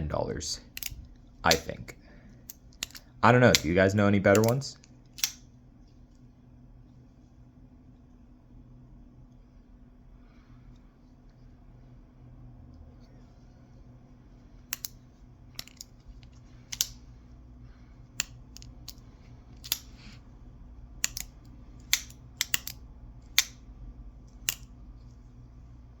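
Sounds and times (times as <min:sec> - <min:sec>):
folding knife clicking open and shut: 0:00.8 - 0:01.8, 0:02.5 - 0:03.7, 0:04.3 - 0:04.6, 0:05.2 - 0:05.4, 0:14.7 - 0:15.0, 0:15.6 - 0:15.9, 0:16.7 - 0:17.0, 0:19.6 - 0:20.2, 0:21.0 - 0:23.6, 0:24.4 - 0:24.7.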